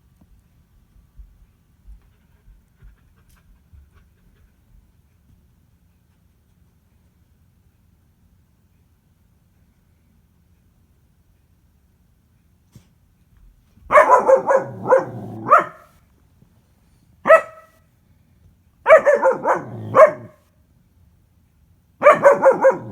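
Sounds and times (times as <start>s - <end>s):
puppy barking: 13.9s - 16.0s, 17.2s - 17.8s, 18.8s - 20.4s, 22.0s - 22.9s.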